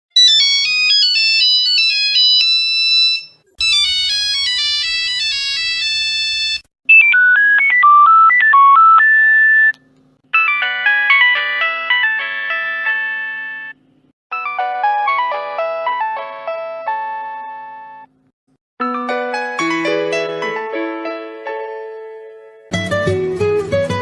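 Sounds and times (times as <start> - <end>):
mobile phone ringtones: 0.2 - 9.7, 10.3 - 15.3.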